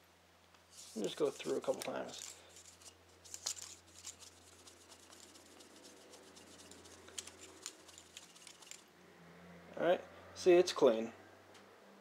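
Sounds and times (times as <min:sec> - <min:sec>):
cleaning rod scraping in barrel: 0:00.7 - 0:08.9.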